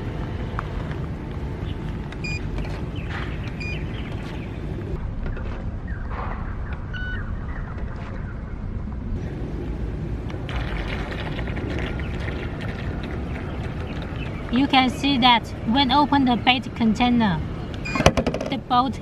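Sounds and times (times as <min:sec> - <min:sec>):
low outdoor rumble: 0:00.0 - 0:19.0
bird chirp: 0:01.6 - 0:04.7, 0:05.3 - 0:08.6, 0:12.0 - 0:14.8.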